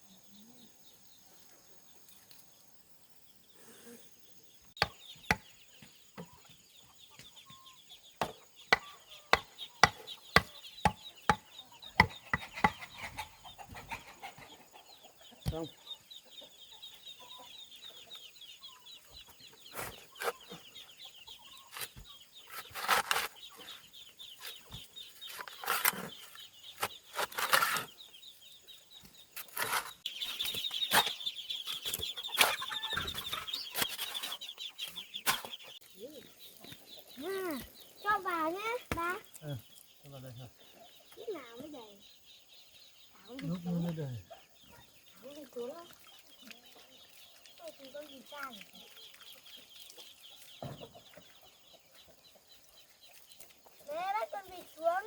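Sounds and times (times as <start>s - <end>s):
insects trilling: 0.0s - 51.8s, 52.4s - 55.0s
chickens clucking: 4.8s - 55.0s.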